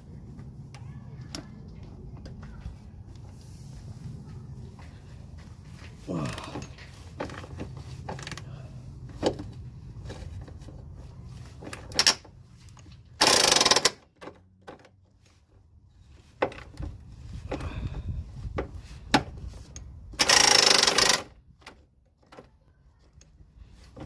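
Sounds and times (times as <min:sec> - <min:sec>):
hand tools clicking and knocking: 0:11.6 - 0:15.0, 0:18.6 - 0:22.5.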